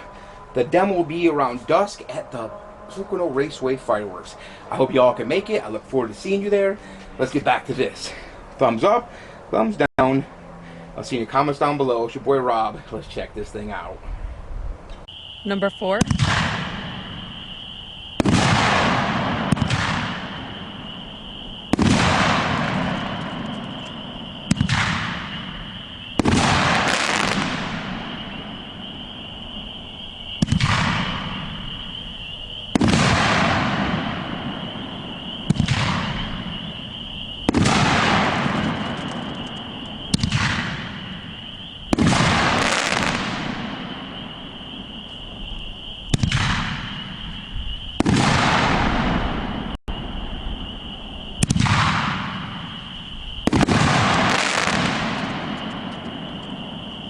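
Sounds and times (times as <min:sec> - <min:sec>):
firework shots: 0:15.2 - 0:50.2, 0:51.4 - 0:57.0.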